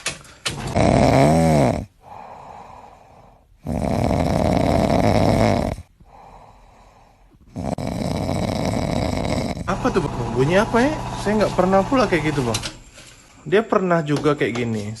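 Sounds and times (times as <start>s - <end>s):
van noise: 9.0s - 13.0s.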